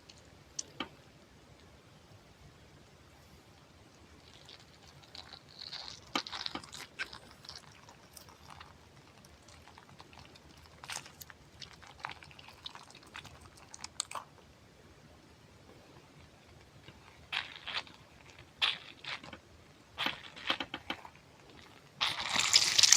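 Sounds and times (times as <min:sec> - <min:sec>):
crunching and crackling clicks: 0:04.2 - 0:14.4, 0:16.2 - 0:22.9.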